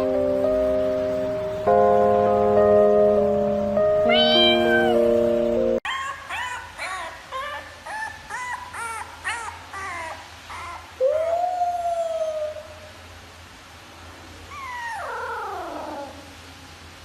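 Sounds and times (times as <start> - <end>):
dog whining: 4.1 - 5.0, 5.9 - 12.9, 14.5 - 16.4
dog whimpering and yipping: 5.9 - 12.8, 14.5 - 16.3
dog howling: 5.9 - 12.9, 14.6 - 16.3.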